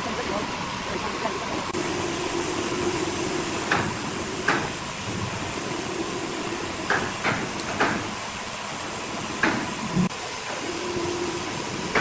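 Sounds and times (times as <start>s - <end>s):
sawmill machinery hissing: 0.0s - 12.0s
sharp knocks of wood or metal: 3.7s - 4.8s, 6.9s - 8.1s, 9.4s - 9.8s.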